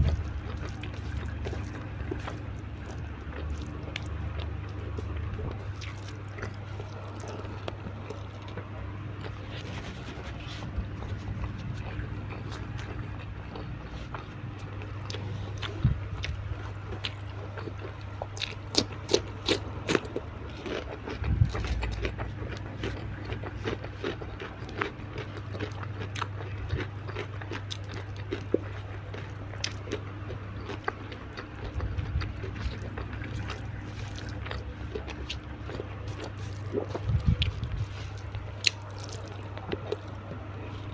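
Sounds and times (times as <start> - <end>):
crunchy chewing and biting: 0.0 - 40.9
low hum: 0.0 - 40.9.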